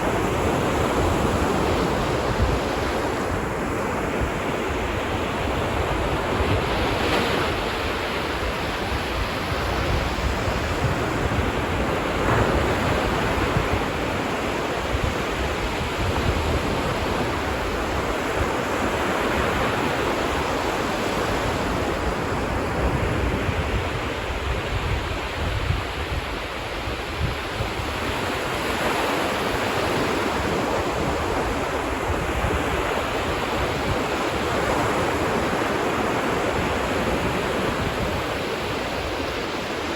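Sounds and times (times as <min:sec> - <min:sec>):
ocean waves washing onto beach: 0:00.0 - 0:39.9
wind buffeting microphone: 0:00.0 - 0:39.9.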